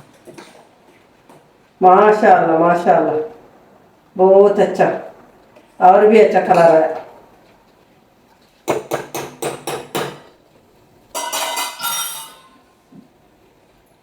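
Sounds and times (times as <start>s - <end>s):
utensil tapping steel pot: 8.7s - 10.3s, 11.1s - 12.6s
clinking clatter of metal: 11.1s - 12.7s.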